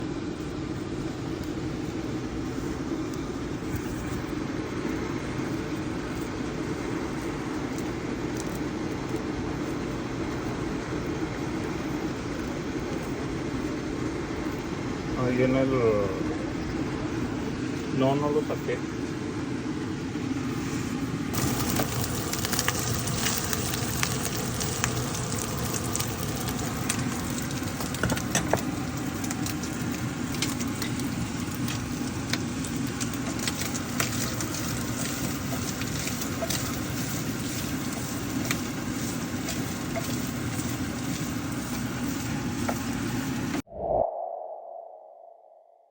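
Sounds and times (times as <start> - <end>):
meat sizzling with pops: 0.5 - 14.8, 21.3 - 43.6.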